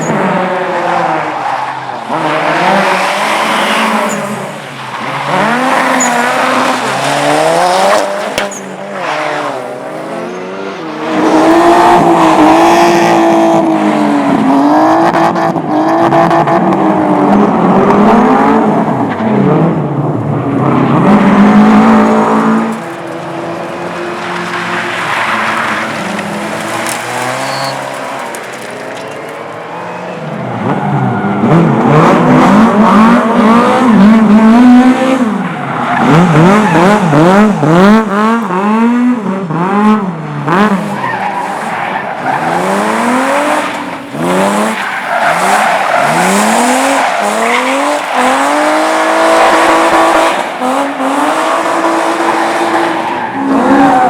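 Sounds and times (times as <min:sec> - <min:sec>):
car engine revving: 0:00.0 - 0:19.8, 0:20.6 - 0:54.0
tyres squealing: 0:24.3 - 0:30.2, 0:40.8 - 0:54.0.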